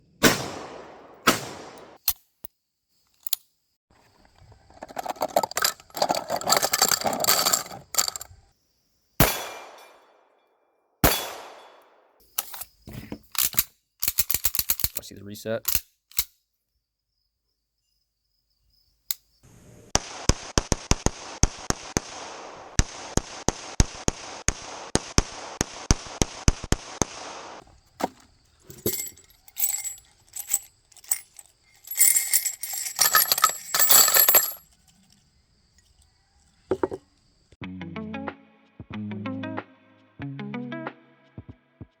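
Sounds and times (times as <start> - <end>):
metallic clinks and rattles: 4.6 - 8.4, 12.3 - 15.0, 27.9 - 37.0
sharp mechanical clicks: 13.4 - 15.0.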